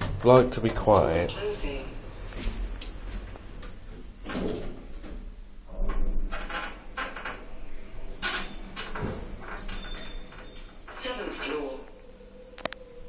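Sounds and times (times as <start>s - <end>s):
elevator low hum: 0.0s - 13.0s
elevator scraping clunks: 2.4s - 12.4s.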